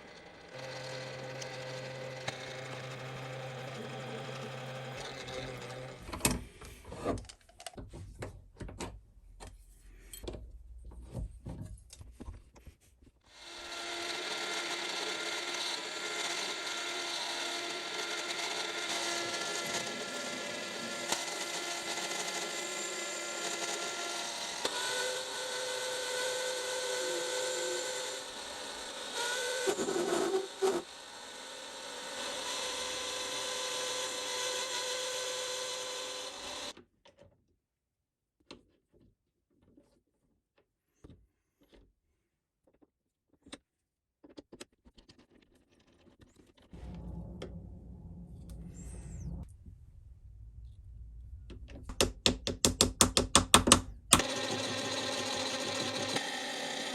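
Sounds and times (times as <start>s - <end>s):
metal being cut: 0.0s - 6.0s, 13.3s - 36.7s, 54.1s - 56.9s
power tool motor whine: 0.0s - 6.2s, 13.3s - 36.7s, 54.1s - 56.9s.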